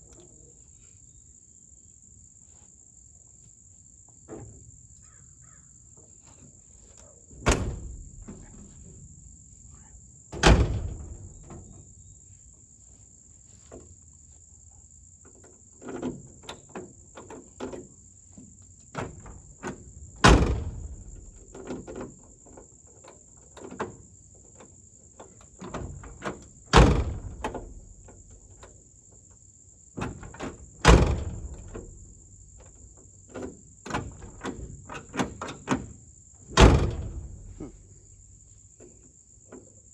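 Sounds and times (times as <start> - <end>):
truck door shutting: 7.3 - 9.0, 10.3 - 11.8, 19.0 - 22.2, 25.6 - 28.6, 30.0 - 38.2
door latch clicks and rattles: 7.4 - 8.7, 10.3 - 11.8, 18.9 - 22.2, 25.4 - 28.8, 30.0 - 37.8.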